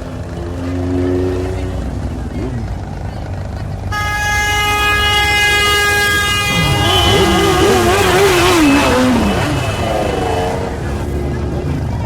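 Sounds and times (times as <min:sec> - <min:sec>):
low engine rumble: 0:00.0 - 0:12.0
vehicle horn held note: 0:03.9 - 0:10.6.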